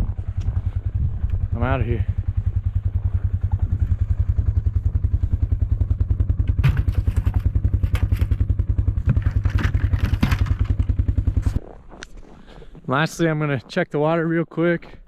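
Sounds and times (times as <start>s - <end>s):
engine chugging: 0.0s - 12.7s
clanks and rattles: 6.4s - 11.6s.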